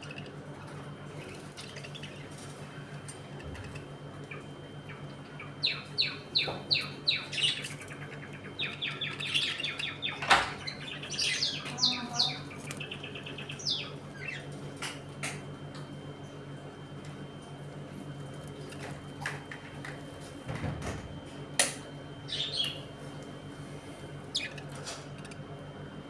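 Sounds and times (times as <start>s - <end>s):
steady low hum: 0.0s - 26.0s
budgerigars chirping: 4.3s - 14.5s, 22.3s - 22.9s, 24.3s - 24.6s.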